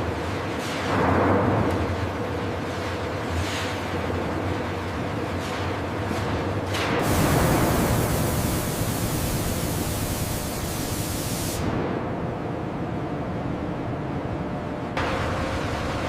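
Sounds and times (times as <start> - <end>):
rushing hiss: 7.1 - 11.6.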